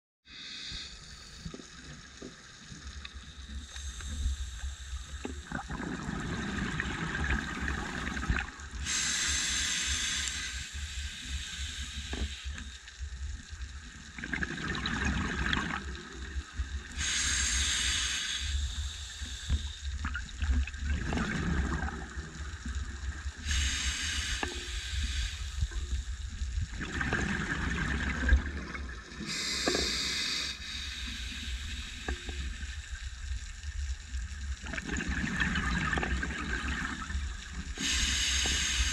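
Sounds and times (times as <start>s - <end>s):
diver breathing through regulator: 0.2s - 1.6s, 8.8s - 12.7s, 16.9s - 19.8s, 23.4s - 25.8s, 29.2s - 32.6s, 37.8s - 38.9s
exhaled bubbles: 5.4s - 9.0s, 14.1s - 17.4s, 20.0s - 23.8s, 26.6s - 30.0s, 34.6s - 38.2s.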